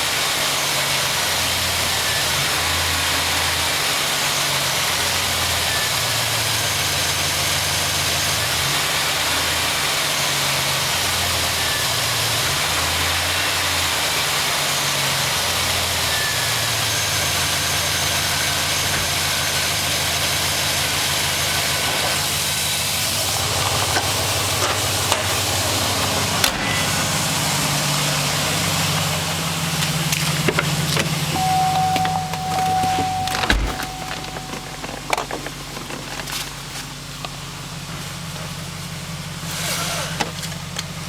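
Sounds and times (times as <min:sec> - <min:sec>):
car engine idling: 0:13.9 - 0:39.5.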